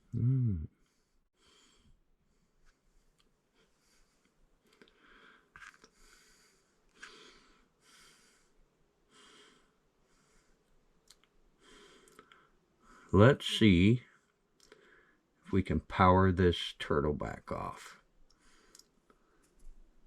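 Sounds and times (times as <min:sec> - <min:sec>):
faint breaths: 0:00.8 - 0:10.9, 0:11.5 - 0:15.5, 0:18.0 - 0:19.8.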